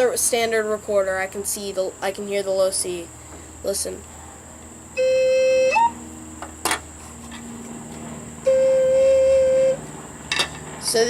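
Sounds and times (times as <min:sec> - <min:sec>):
recorder playing low notes: 0:05.0 - 0:06.0, 0:08.4 - 0:09.9.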